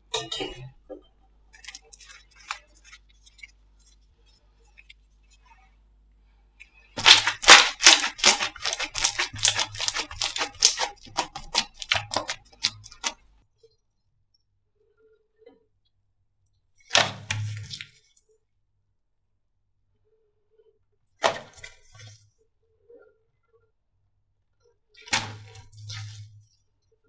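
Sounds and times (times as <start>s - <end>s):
sharp sticky clicks: 7.0s - 13.2s
slime squeezed by hand: 7.0s - 13.2s.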